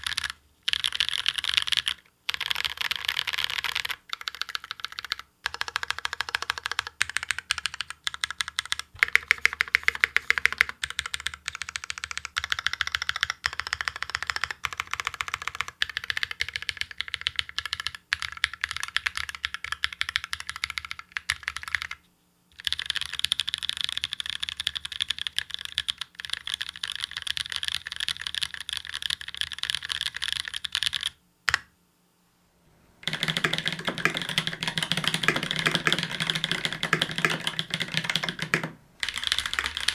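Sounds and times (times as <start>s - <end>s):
mechanical keyboard typing: 0.0s - 22.0s, 22.6s - 31.6s, 33.0s - 39.9s.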